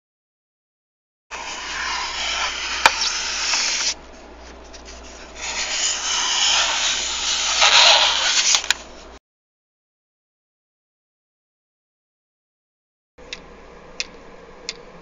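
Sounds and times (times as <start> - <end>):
dry scraping and rubbing: 1.3 - 9.0.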